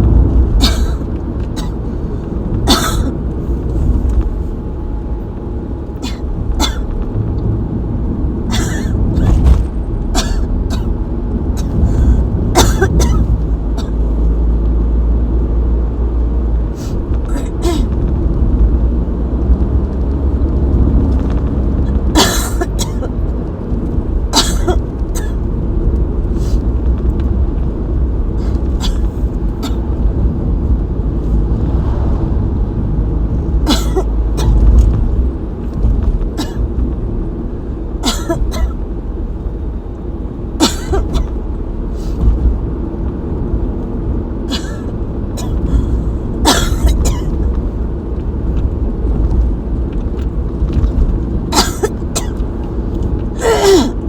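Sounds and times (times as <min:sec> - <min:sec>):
steady low rumble: 0:00.0 - 0:54.0
person coughing: 0:00.6 - 0:01.8, 0:02.7 - 0:03.1, 0:06.0 - 0:06.9, 0:08.5 - 0:09.5, 0:10.2 - 0:10.9, 0:11.6 - 0:14.0, 0:17.3 - 0:18.0, 0:22.2 - 0:23.2, 0:24.4 - 0:25.4, 0:28.8 - 0:29.8, 0:33.7 - 0:34.7, 0:38.0 - 0:38.8, 0:40.6 - 0:41.3, 0:44.5 - 0:47.4, 0:51.5 - 0:52.4, 0:53.4 - 0:54.0.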